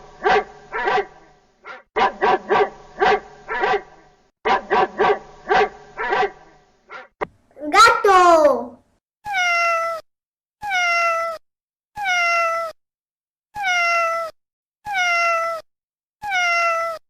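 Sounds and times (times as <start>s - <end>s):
cat meowing: 9.3s - 11.4s, 12.0s - 12.8s, 13.6s - 17.0s.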